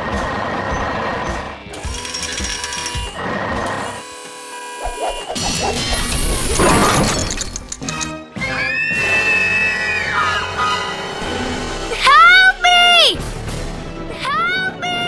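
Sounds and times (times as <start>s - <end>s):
background music: 5.4s - 15.0s.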